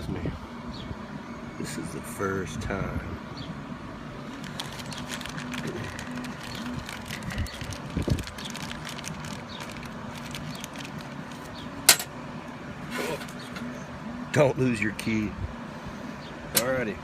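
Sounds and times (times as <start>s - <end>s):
plastic packaging crinkling: 4.3s - 11.6s.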